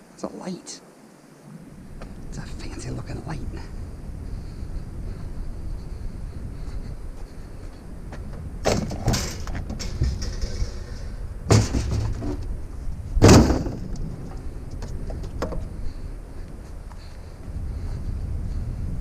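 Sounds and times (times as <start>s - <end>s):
clunks of items handled: 8.7s - 12.5s
vehicle door slammed shut: 13.2s - 13.8s.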